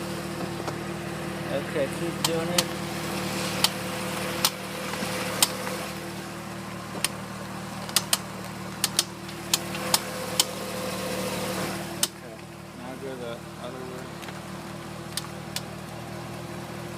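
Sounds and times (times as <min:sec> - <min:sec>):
car engine idling: 0:00.0 - 0:16.9
car wheel popping clicks: 0:03.6 - 0:03.8, 0:04.4 - 0:05.8, 0:07.8 - 0:10.5.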